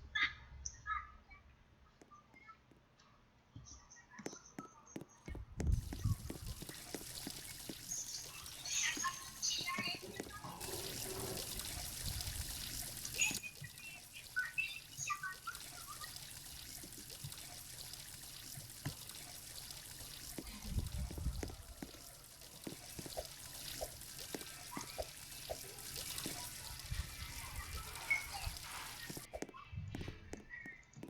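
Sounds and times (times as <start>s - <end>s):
water pouring: 5.3s - 29.5s.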